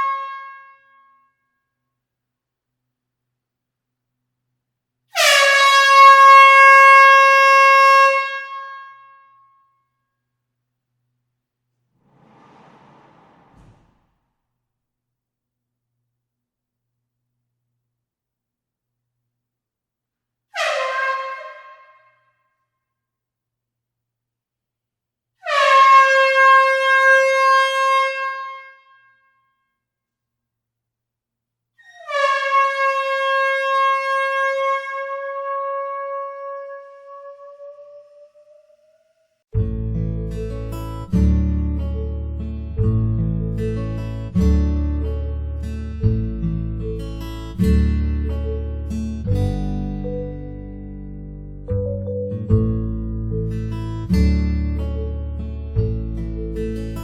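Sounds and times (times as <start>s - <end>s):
air horn blast: 5.2s - 8.9s, 12.0s - 14.2s.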